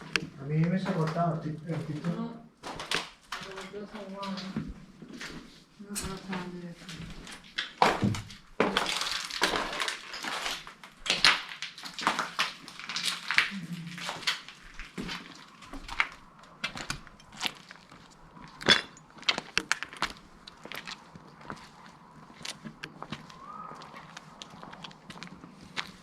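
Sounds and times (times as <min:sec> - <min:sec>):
footsteps crunching over rubble: 0:00.0 - 0:26.0.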